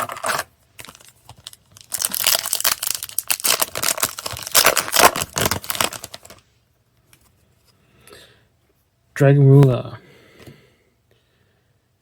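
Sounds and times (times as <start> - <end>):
foil wrapper crinkling and tearing: 0.0 - 6.4.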